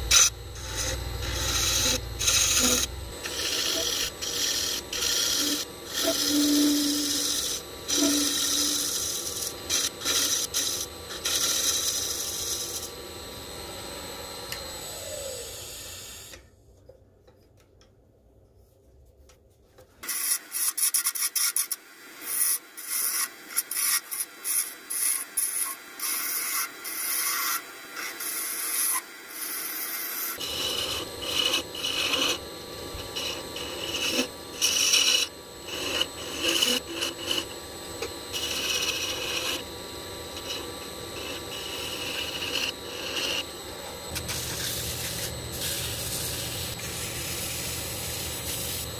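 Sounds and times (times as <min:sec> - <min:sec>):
tool scraping wood on lathe: 0:00.0 - 0:12.9, 0:22.3 - 0:43.5, 0:44.1 - 0:48.9.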